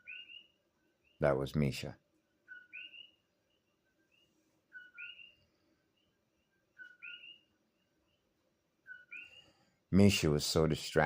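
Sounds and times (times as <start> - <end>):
soft bird chirps: 0.0 - 9.8
bird whistle call: 2.5 - 3.2, 4.7 - 5.3, 6.8 - 7.5.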